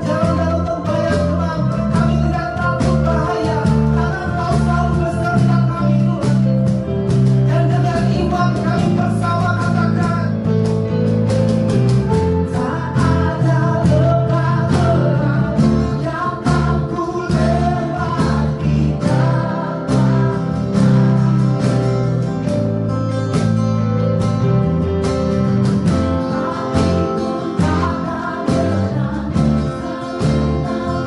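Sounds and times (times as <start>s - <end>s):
person singing: 0.0s - 6.5s, 12.4s - 21.8s, 26.1s - 31.0s
band with guitar and bass: 0.0s - 31.0s
regular drum beat: 0.0s - 31.0s.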